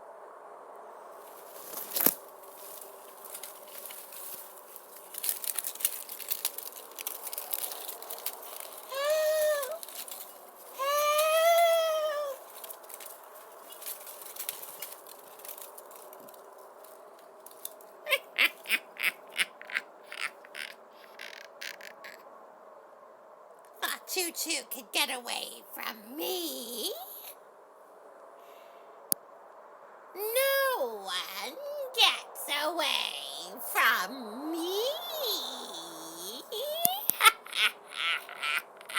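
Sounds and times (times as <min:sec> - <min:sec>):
rustling crackles: 0:01.1 - 0:22.2, 0:30.2 - 0:38.9
wailing calls: 0:02.6 - 0:15.6.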